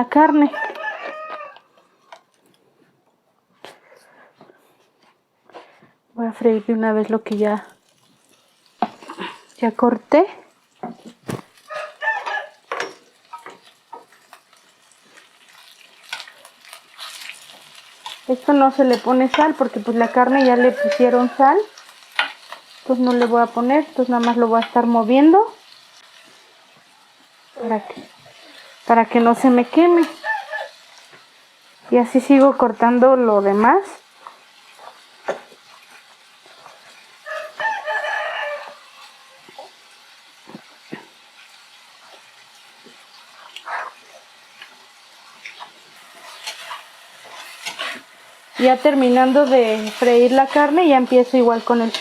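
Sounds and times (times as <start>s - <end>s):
rooster crowing: 0.5s - 1.7s, 11.7s - 12.7s, 20.0s - 21.6s, 30.1s - 30.8s, 37.2s - 39.7s
meat sizzling in a pan: 7.2s - 52.0s.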